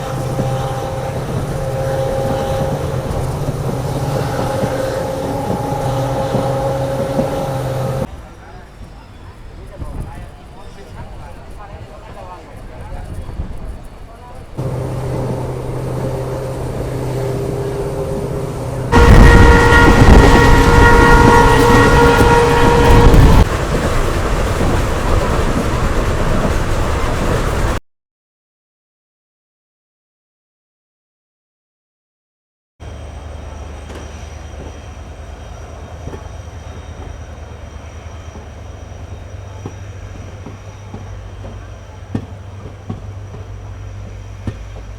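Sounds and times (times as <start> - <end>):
locomotive horn blast: 0.0 - 8.1, 14.6 - 23.5
diesel locomotive engine drone: 0.0 - 27.8, 32.8 - 44.9
train clicking and rattling: 0.0 - 27.8, 33.0 - 44.9.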